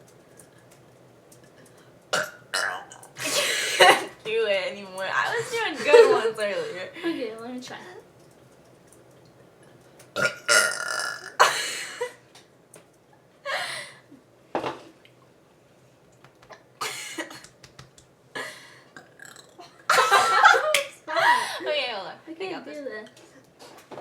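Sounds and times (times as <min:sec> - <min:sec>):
person burping: 0:02.2 - 0:03.1, 0:10.2 - 0:11.6, 0:19.0 - 0:19.7.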